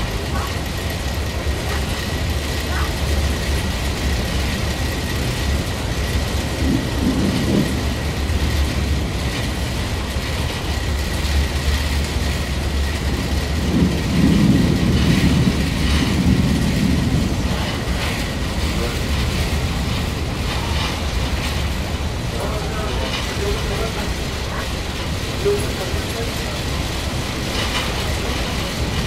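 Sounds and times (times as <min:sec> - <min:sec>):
boat engine rumble and hiss: 0:00.0 - 0:29.0.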